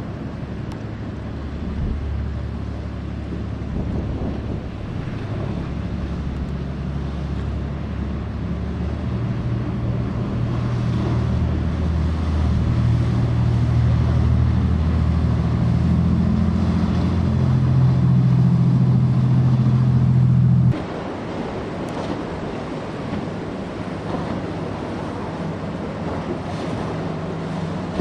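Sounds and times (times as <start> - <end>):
motorboat engine droning: 0.0 - 28.0
wind and water hiss: 0.0 - 28.0.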